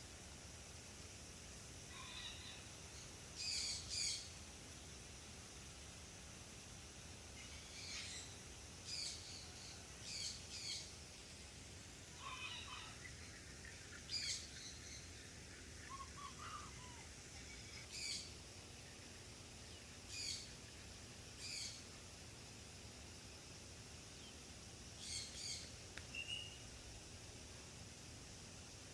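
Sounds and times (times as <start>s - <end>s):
steady hiss: 0.0s - 28.9s
wild birds calling: 12.1s - 20.7s.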